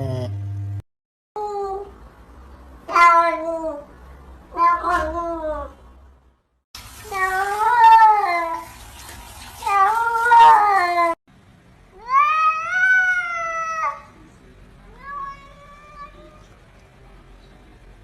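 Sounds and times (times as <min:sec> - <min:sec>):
cats meowing: 0:07.1 - 0:08.6, 0:09.6 - 0:11.2, 0:14.9 - 0:16.5.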